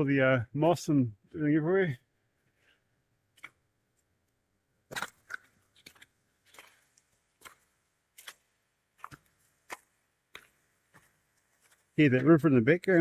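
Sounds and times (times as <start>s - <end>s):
boot footsteps crunching on track: 4.8s - 13.0s.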